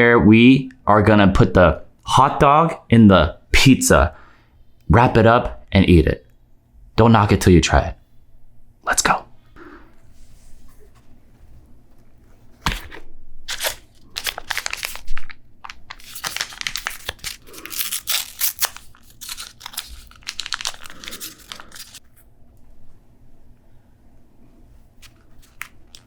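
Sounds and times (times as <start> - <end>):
food wrapping crinkling and tearing: 13.4 - 22.1, 25.0 - 26.0.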